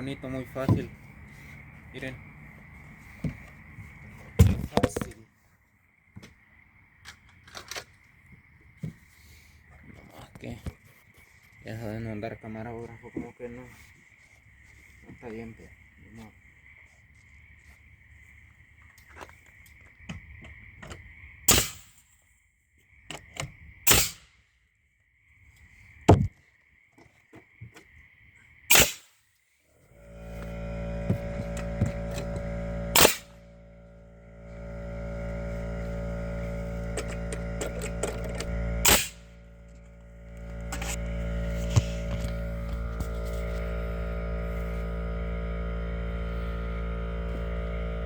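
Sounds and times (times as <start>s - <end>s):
faint high whine: 0.0s - 5.2s, 29.8s - 48.0s
steady tonal hum: 29.8s - 48.0s.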